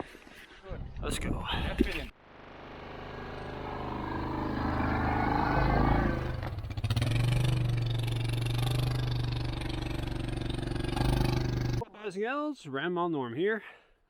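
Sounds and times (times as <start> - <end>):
vehicle engine pulling away: 2.2 - 11.8.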